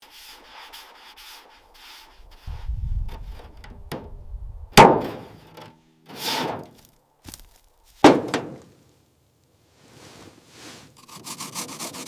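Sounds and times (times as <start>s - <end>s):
soft hissing thump: 2.0s - 5.4s
low rumble: 2.2s - 5.0s
loud sharp bang: 3.1s - 5.4s.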